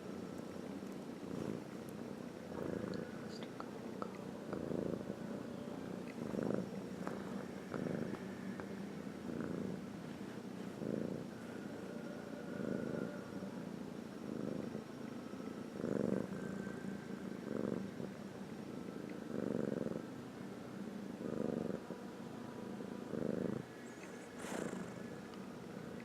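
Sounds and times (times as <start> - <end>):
pet snoring: 1.2 - 1.8, 2.5 - 3.4, 4.5 - 5.2, 6.0 - 11.5, 12.5 - 13.3, 14.2 - 14.8, 15.7 - 16.8, 17.4 - 18.1, 19.3 - 20.1, 21.2 - 21.9, 23.0 - 25.1.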